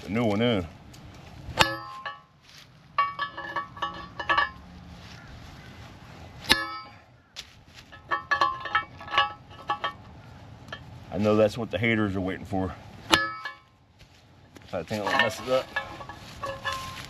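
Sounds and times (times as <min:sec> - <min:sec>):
hammer striking metal: 0:01.6 - 0:02.3, 0:06.5 - 0:07.0, 0:13.1 - 0:13.7.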